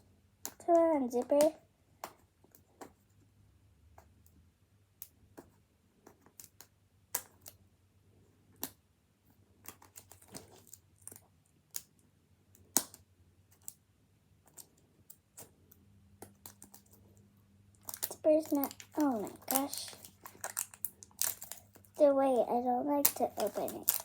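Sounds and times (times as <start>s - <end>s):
plastic packaging crinkling: 17.7s - 24.0s.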